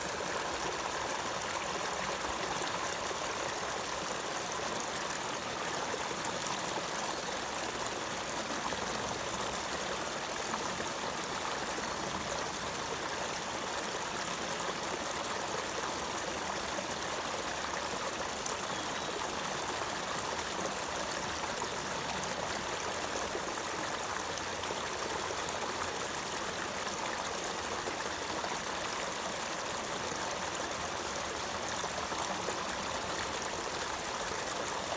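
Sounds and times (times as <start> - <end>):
running water: 0.0 - 34.9.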